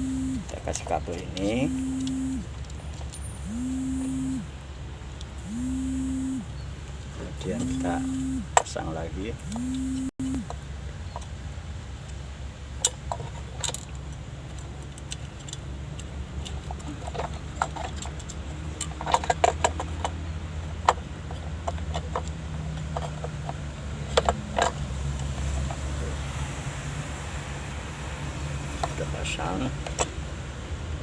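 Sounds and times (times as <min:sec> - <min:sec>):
steady low hum: 0:00.0 - 0:02.7, 0:03.4 - 0:10.5.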